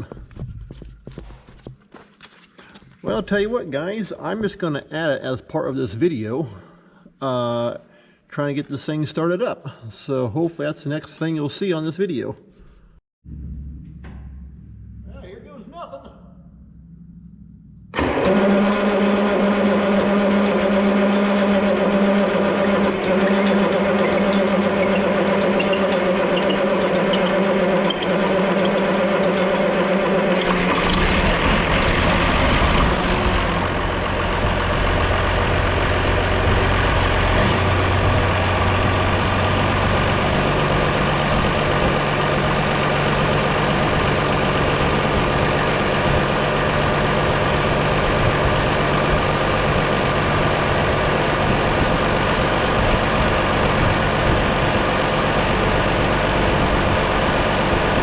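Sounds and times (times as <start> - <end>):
diesel engine starting and idling: 13.2 - 58.0.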